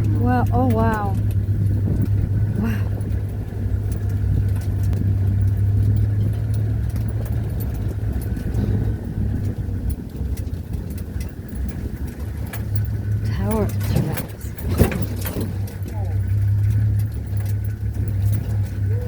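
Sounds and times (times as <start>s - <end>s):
vehicle engine humming: 0.0s - 19.0s.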